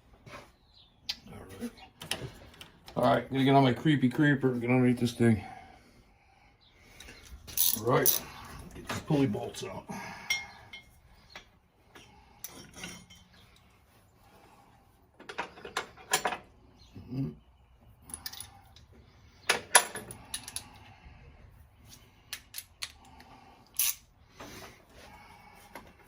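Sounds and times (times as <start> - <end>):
metal tools clanking on engine parts: 10.2 - 13.7, 15.2 - 16.5, 19.4 - 20.8.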